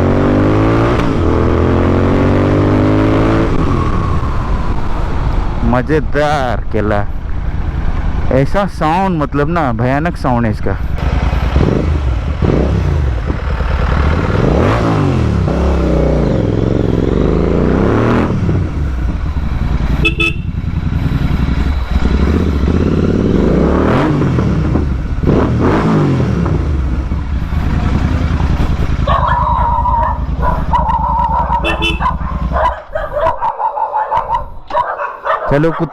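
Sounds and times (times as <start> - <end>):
motorcycle engine revving: 0.0 - 5.6, 10.9 - 33.4.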